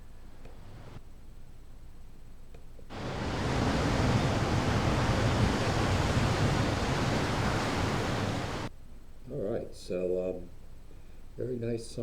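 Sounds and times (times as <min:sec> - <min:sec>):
steady rushing noise: 0:02.9 - 0:08.7.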